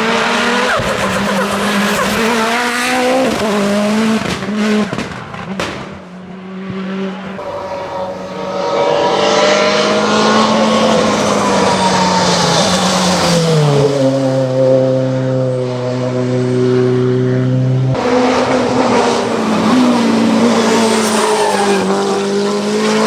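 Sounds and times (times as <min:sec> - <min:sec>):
race car engine at high revs: 0:00.0 - 0:23.0
sharp crack: 0:04.2 - 0:06.0.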